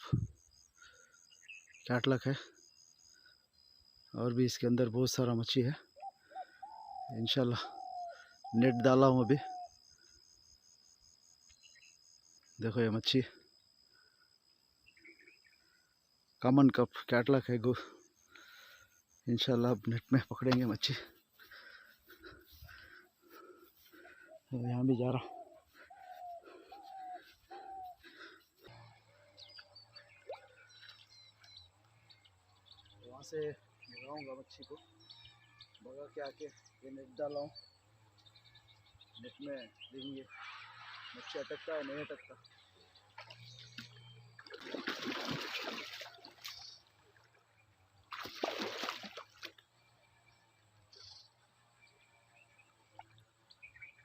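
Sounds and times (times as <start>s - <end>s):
small birds chirping: 0.0s - 54.0s
faint dove cooing: 5.9s - 9.9s, 22.3s - 29.2s
water splashing in a stream: 43.2s - 49.6s.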